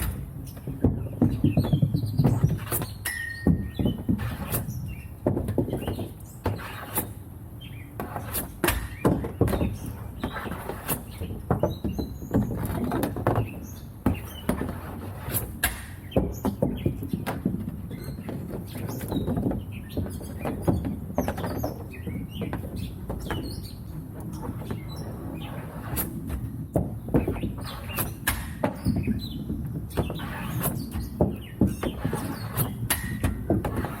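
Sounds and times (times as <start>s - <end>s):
hockey stick and puck clacking: 0.0s - 7.2s, 7.9s - 34.0s
short high squeaks: 2.6s - 3.6s.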